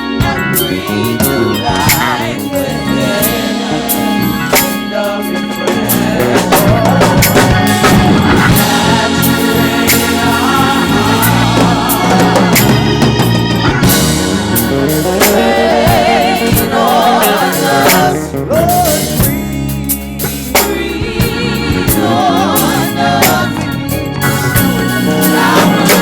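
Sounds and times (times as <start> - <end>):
person singing with vibrato: 0.0 - 13.4, 14.5 - 19.4, 25.0 - 26.0
drum kit: 0.0 - 26.0
keyboard chords: 0.0 - 26.0.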